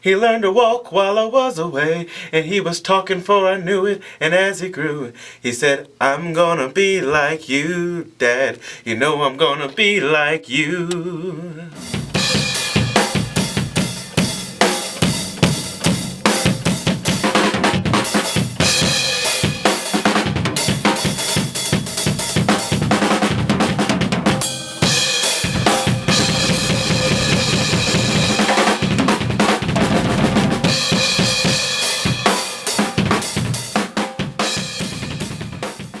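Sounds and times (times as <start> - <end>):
drum kit playing fast: 11.8 - 36.0.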